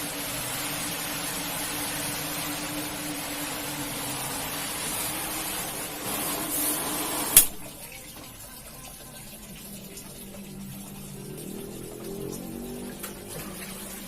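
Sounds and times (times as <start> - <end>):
water spraying hiss: 0.0 - 7.6, 10.2 - 14.0
quiet water sound: 7.5 - 14.0.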